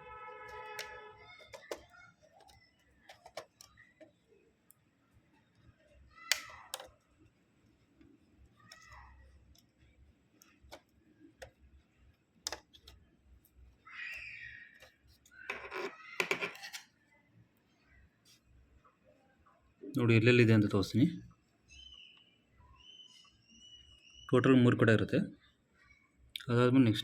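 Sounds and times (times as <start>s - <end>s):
plastic clicks and taps: 0.5s - 4.2s, 6.3s - 7.0s, 12.4s - 13.0s.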